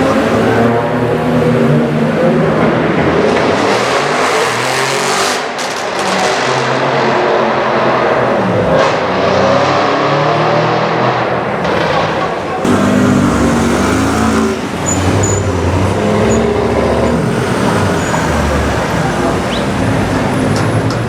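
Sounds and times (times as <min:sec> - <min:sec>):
car engine revving: 0:00.0 - 0:21.0
exhaust crackles: 0:12.5 - 0:21.0.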